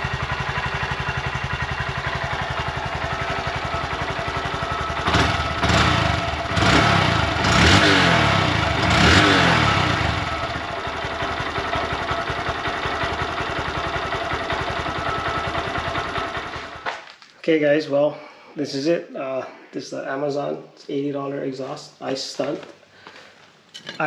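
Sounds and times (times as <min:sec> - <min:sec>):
motorcycle engine idling and revving: 0:00.0 - 0:16.9.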